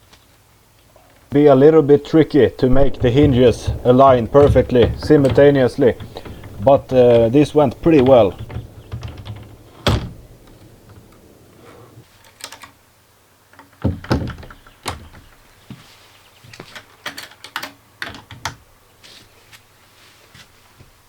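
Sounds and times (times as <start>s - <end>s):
window sash thunking against frame: 1.4s - 11.0s
hinge and latch clicks: 2.1s - 10.5s.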